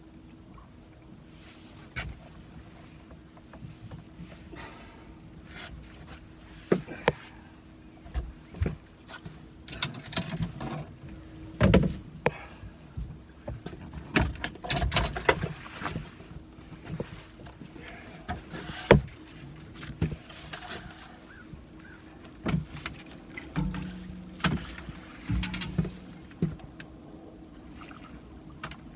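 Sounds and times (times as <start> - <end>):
fishing gear knocking and scraping: 23.5 - 26.6.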